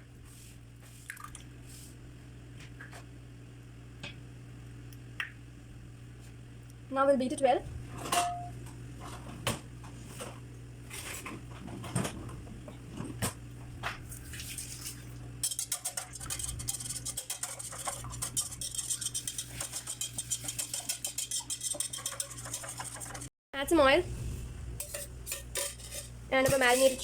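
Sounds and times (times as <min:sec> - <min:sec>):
utensil beating eggs in bowl: 0:14.4 - 0:23.3, 0:24.8 - 0:27.0.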